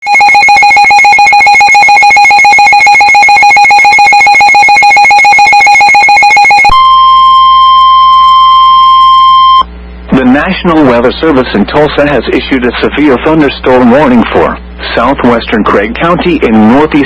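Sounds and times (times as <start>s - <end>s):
steady high alarm tone: 0.0s - 9.7s
two-tone alarm: 0.0s - 9.7s.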